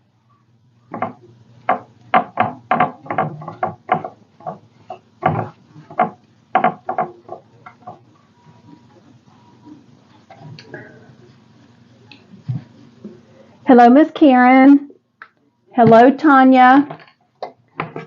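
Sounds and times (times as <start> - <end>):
wooden pieces knocking on table: 0.9 - 8.0.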